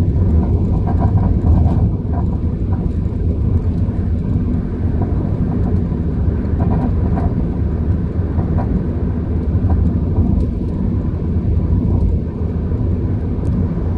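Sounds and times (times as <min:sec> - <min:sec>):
car rumble: 0:00.0 - 0:13.9.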